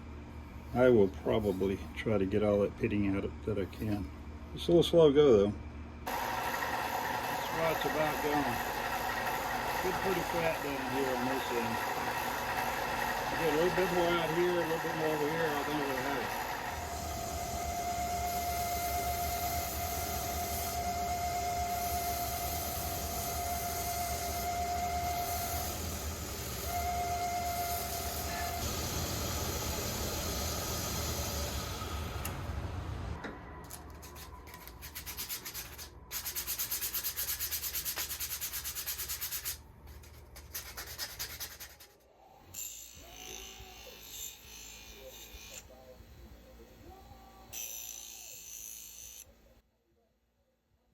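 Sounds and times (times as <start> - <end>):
sanding metal: 6.8 - 28.8, 34.0 - 42.0.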